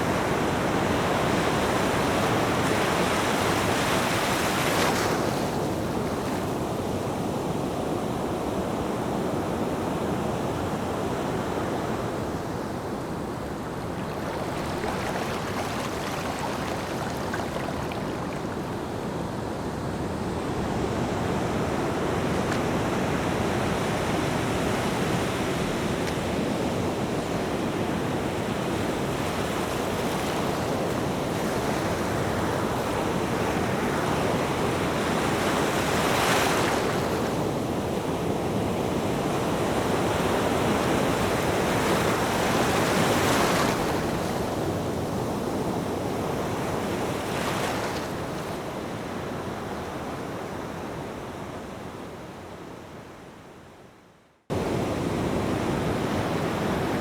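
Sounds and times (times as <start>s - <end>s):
ocean waves washing: 10.7s - 49.8s.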